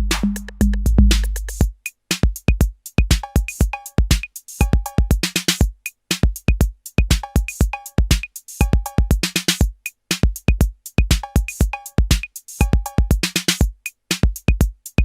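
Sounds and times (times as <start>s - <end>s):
deep kick drum: 0.0s - 1.7s
hi-hat clicks: 0.0s - 15.0s.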